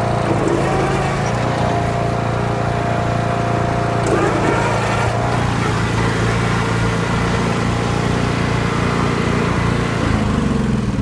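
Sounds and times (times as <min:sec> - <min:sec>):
riding lawnmower engine running: 0:00.0 - 0:11.0.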